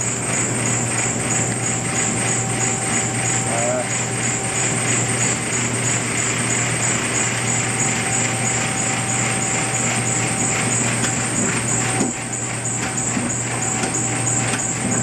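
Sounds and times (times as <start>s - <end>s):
pulsing high hiss: 0.0s - 11.9s
faint steady whine: 0.0s - 15.0s
machine low hum: 0.0s - 15.0s.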